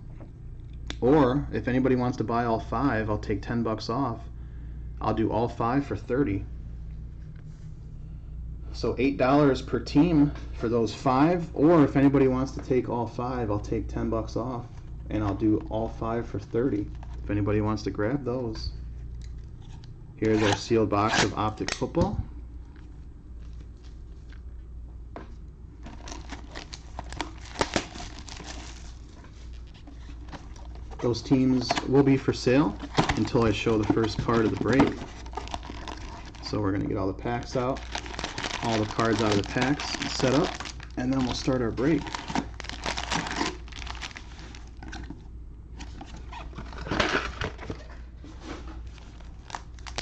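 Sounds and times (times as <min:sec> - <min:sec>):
plastic shrink-wrap crinkling: 0:25.8 - 0:45.1, 0:46.0 - 0:50.0.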